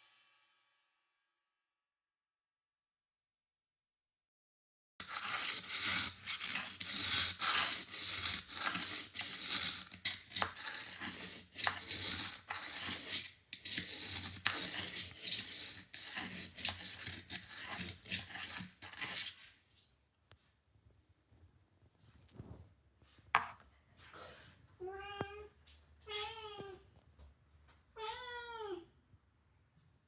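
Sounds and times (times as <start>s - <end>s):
tool edge scraping on abrasive: 5.0s - 19.6s.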